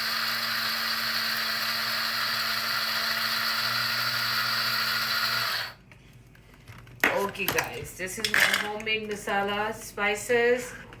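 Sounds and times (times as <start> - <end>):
electric spice grinder whirring: 0.0 - 5.8.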